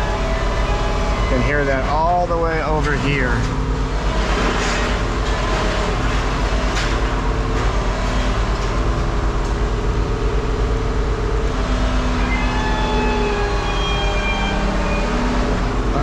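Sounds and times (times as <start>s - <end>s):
steel wheels squealing: 11.8s - 16.0s.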